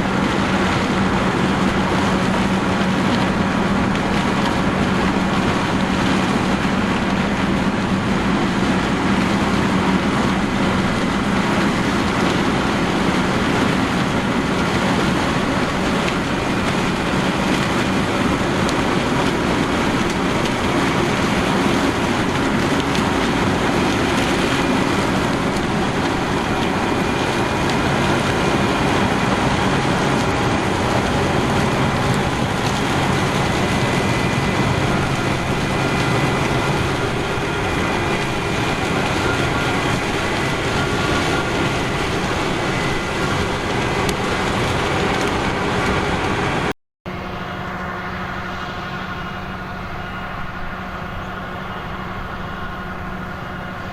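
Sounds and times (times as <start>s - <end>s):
harvesting machinery engine drone: 0.0s - 53.9s.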